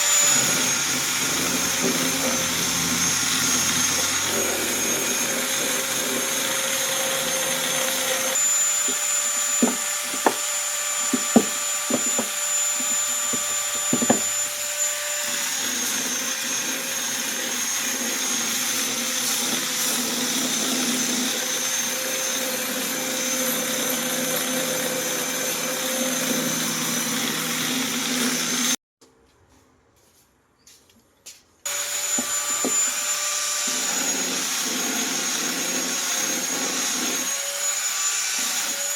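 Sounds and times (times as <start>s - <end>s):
power tool whining: 0.0s - 28.8s, 31.7s - 38.9s
sharp knocks: 8.8s - 10.5s, 11.1s - 14.4s.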